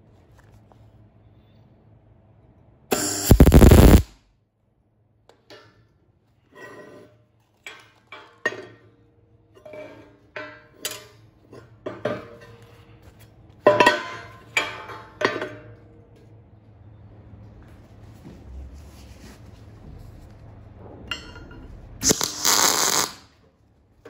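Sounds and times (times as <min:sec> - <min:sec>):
metal clanks and taps: 0:05.3 - 0:05.9, 0:07.5 - 0:09.0, 0:09.6 - 0:12.8, 0:13.6 - 0:15.8, 0:21.0 - 0:21.8
faint low hum: 0:15.4 - 0:22.0.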